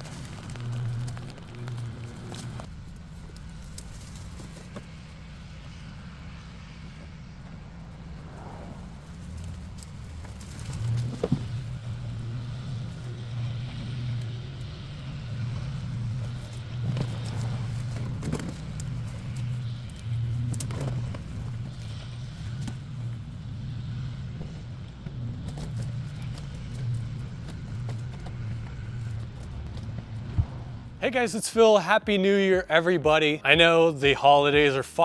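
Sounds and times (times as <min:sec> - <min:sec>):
engine humming: 0:00.0 - 0:35.0.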